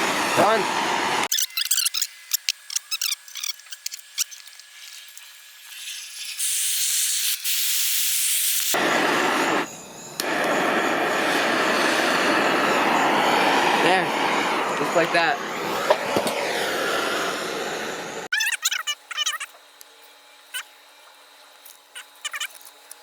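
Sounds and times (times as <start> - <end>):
propane torch flame hissing: 4.7 - 18.3.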